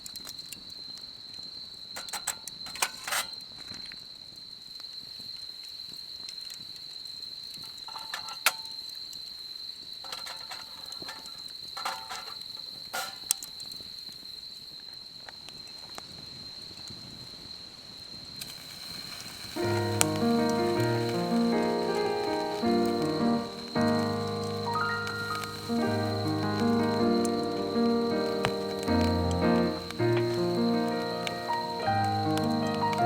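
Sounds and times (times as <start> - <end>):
cricket trilling: 0.0 - 33.0.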